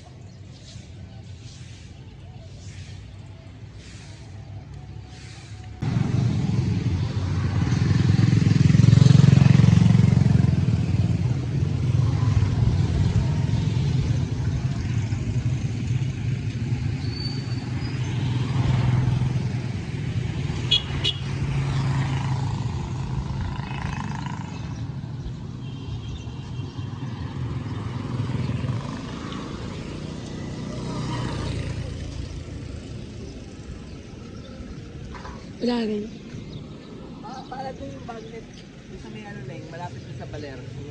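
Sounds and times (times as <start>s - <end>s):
road and wind noise: 0.0s - 40.9s
motorcycle engine running: 5.8s - 16.9s.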